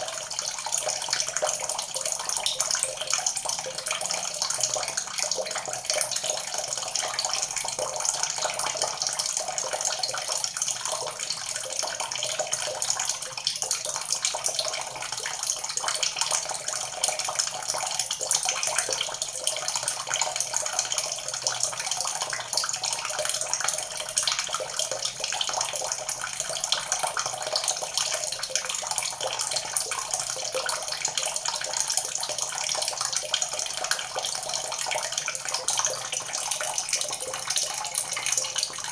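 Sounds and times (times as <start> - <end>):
water pouring from a spout: 0.0 - 38.9.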